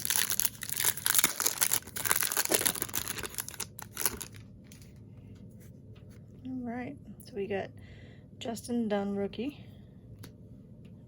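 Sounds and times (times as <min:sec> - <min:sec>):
plastic wrapper tearing and crinkling: 0:00.0 - 0:04.5.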